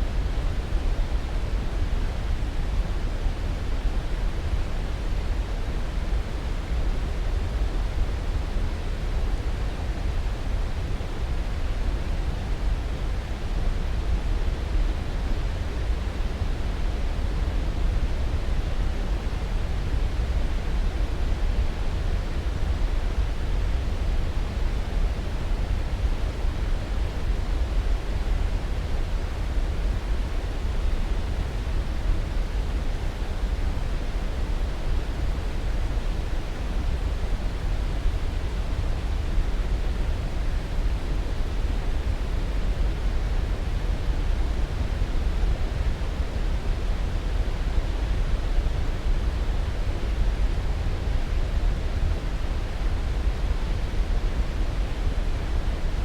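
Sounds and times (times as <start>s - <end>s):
steady low sleep noise: 16.6s - 48.6s.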